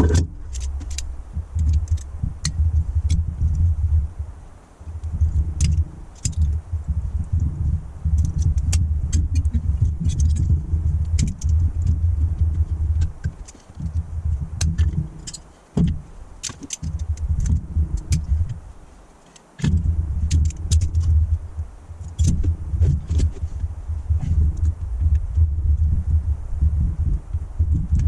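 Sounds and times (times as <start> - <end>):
low rumble: 0.0 - 19.0, 19.6 - 28.0
metallic clicks of tools and parts: 14.6 - 18.3.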